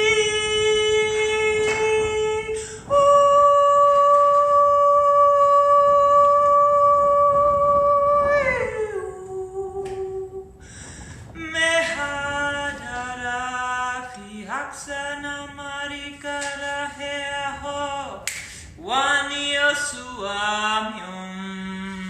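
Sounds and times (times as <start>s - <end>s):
woman singing wordless notes: 0.0s - 10.6s.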